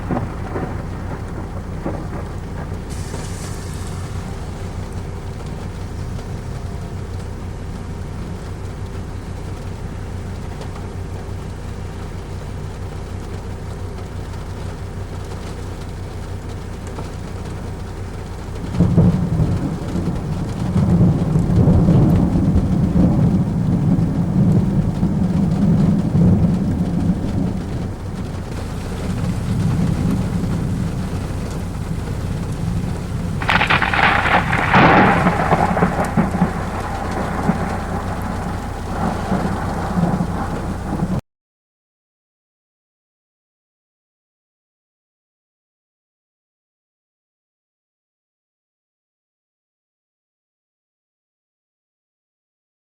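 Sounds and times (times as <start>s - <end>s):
sharp thunder crack: 0.0s - 7.5s, 18.7s - 41.2s
steady rain falling: 0.0s - 41.2s
thunder rumble: 0.0s - 41.2s.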